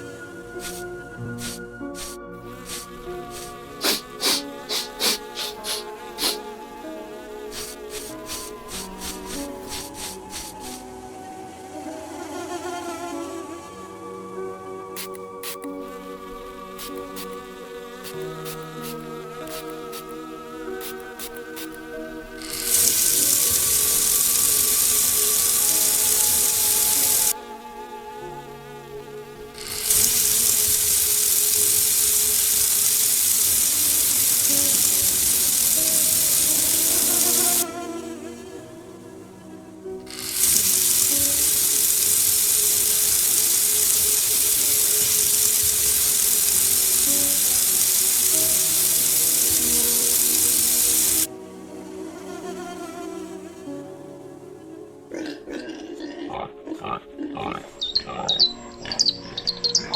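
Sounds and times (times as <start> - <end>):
background music: 0.0 - 59.9
water spraying: 0.6 - 6.5, 7.4 - 10.9, 15.0 - 15.7, 16.7 - 17.4, 18.0 - 27.4, 29.4 - 37.7, 40.1 - 51.3.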